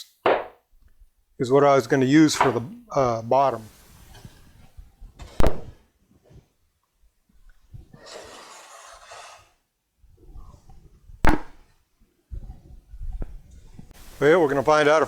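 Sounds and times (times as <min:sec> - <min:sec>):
sharp wooden knock: 0:00.2 - 0:00.6, 0:02.4 - 0:02.7, 0:05.4 - 0:05.8, 0:11.3 - 0:11.6.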